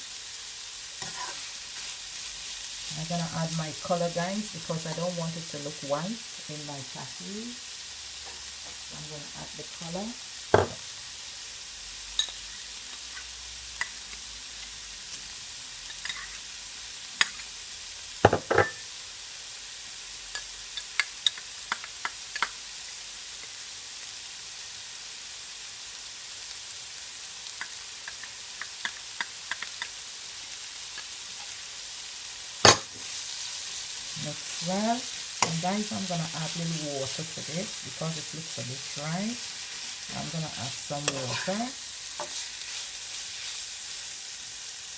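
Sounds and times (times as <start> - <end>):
food sizzling in a pot: 0.0 - 44.9
spoon knocking against pot: 10.6 - 10.8, 18.3 - 18.8, 32.7 - 32.9.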